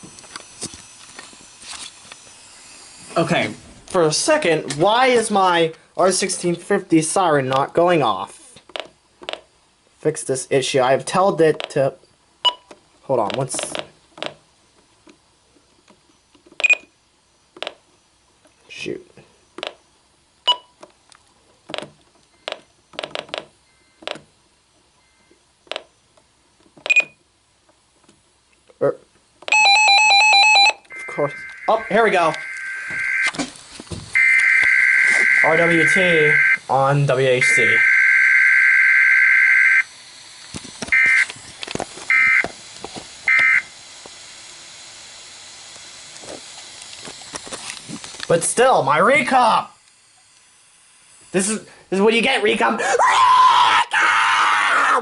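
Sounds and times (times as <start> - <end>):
short electronic beep: 29.5 - 33.3
two-tone warbling data bursts: 29.5 - 33.4, 34.2 - 39.9, 40.9 - 41.3, 42.1 - 42.5.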